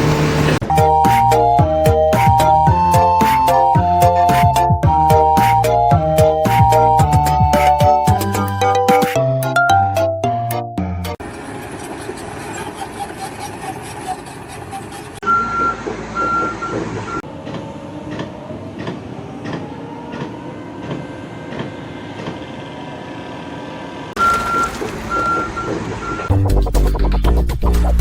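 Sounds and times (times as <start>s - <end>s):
engine and site noise: 0.0s - 8.6s, 11.2s - 26.5s
reversing alarm beeping: 15.2s - 17.3s, 24.2s - 26.3s.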